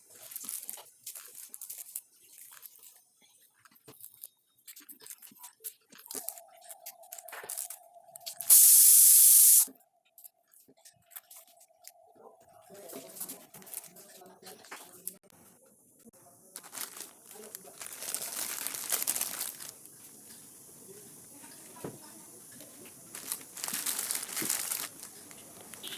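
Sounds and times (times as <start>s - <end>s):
packaging crinkling: 0.1s - 9.1s, 12.7s - 14.2s, 16.5s - 20.7s, 21.8s - 25.9s
loud steady hiss: 8.4s - 9.7s, 17.1s - 25.9s.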